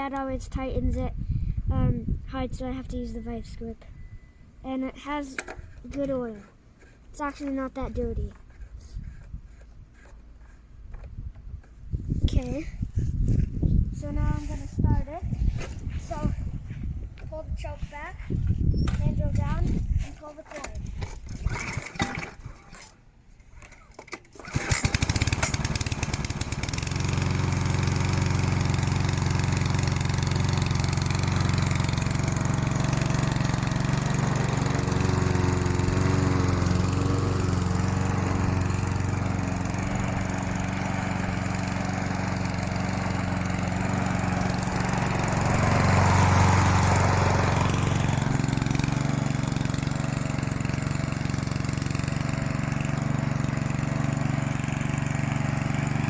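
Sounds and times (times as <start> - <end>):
lawnmower pull cord: 5.3 - 7.1, 20.3 - 56.0
lawnmower engine running: 20.4 - 56.0.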